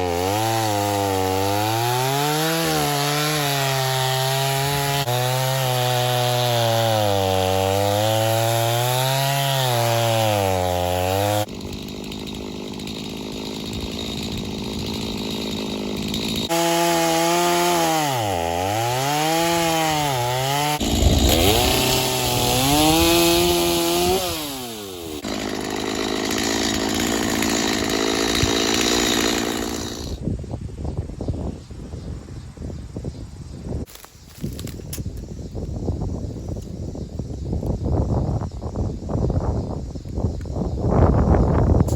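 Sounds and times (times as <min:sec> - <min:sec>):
chainsaw cutting logs: 0:00.0 - 0:30.2.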